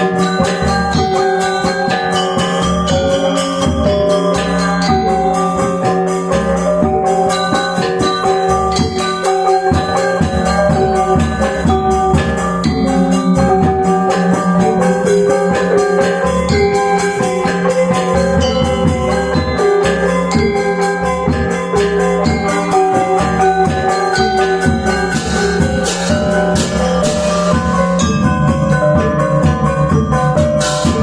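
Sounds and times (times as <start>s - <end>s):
metallophones ringing: 0.0s - 31.0s
drum hits: 8.0s - 31.0s.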